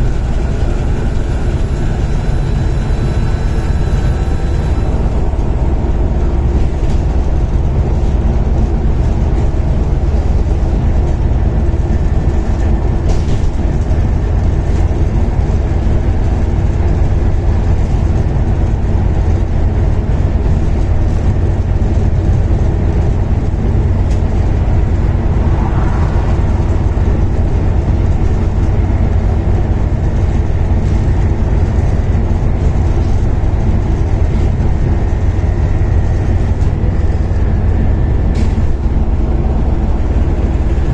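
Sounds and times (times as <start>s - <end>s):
turbocharger whine: 0.0s - 8.2s, 23.8s - 30.3s
diesel bus engine rumbling: 0.0s - 40.9s.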